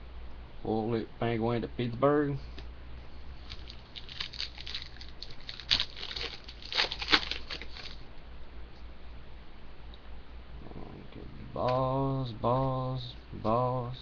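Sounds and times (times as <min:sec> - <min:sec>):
cards rustling and scraping: 0:03.4 - 0:08.0.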